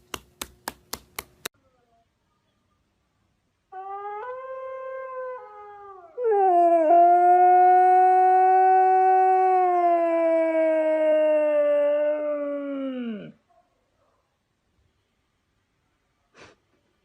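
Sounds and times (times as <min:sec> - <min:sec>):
dog howling: 0:03.7 - 0:13.4.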